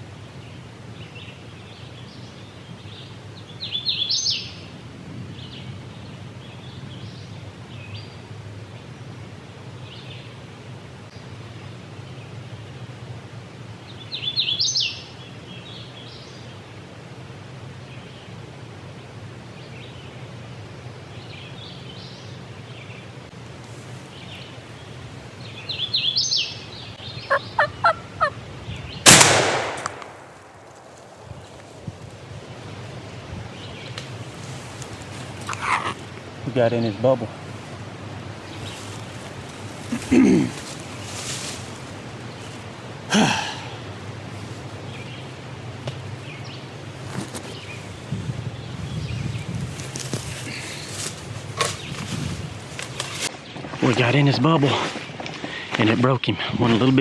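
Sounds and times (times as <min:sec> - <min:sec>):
short turkey calls: 0:27.2 - 0:28.4, 0:35.4 - 0:36.2
turkey gobbling: 0:27.2 - 0:28.4, 0:35.4 - 0:36.2
shotgun blast: 0:29.1 - 0:30.8.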